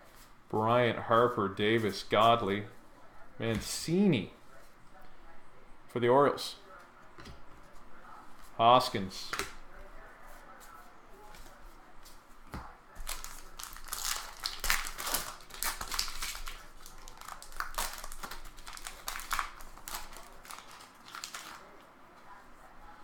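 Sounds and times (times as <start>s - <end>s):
wrapper crinkling and tearing: 13.0s - 21.8s.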